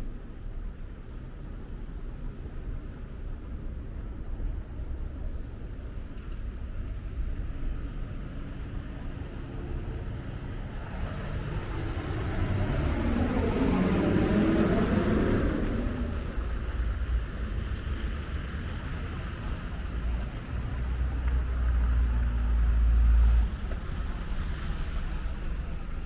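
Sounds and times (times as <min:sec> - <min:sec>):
vehicles passing: 0:03.5 - 0:26.0.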